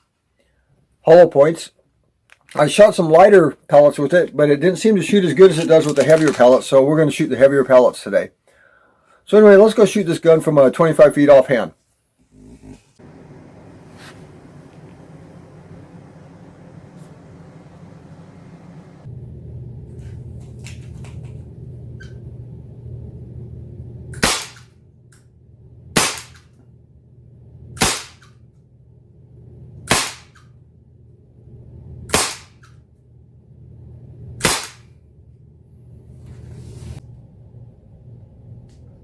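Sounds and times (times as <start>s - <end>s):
pellet revolver shots: 24.2s - 24.6s, 26.0s - 26.4s, 27.8s - 28.2s, 29.9s - 30.4s, 32.1s - 32.6s, 34.4s - 34.9s.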